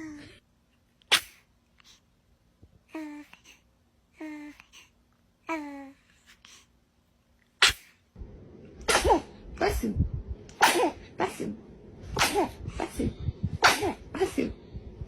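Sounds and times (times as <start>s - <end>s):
background noise: 0.0s - 15.0s
baby sneezing: 1.1s - 1.5s, 7.6s - 8.0s, 8.9s - 9.8s, 10.5s - 11.5s, 12.2s - 13.0s, 13.6s - 14.5s.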